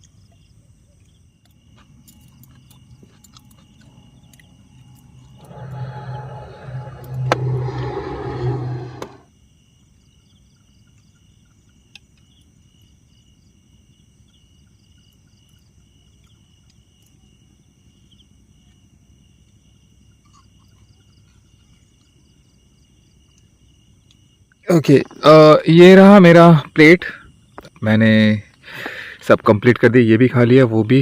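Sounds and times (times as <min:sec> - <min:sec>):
night insects chirping: 0:00.0 - 0:31.0
low hum: 0:03.8 - 0:09.2.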